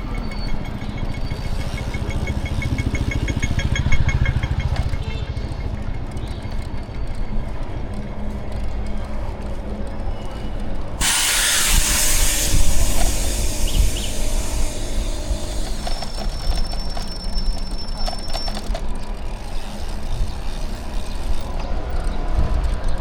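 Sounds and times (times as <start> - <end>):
street traffic: 0.0 - 23.0
low rumble: 11.0 - 17.2
loud hiss: 11.0 - 17.5
thin high whine: 11.0 - 18.6.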